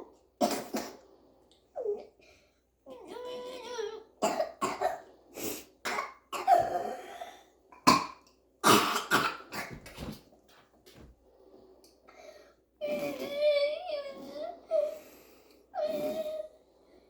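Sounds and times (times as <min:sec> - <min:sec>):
girl coughing: 0:04.2 - 0:05.0, 0:05.9 - 0:07.1.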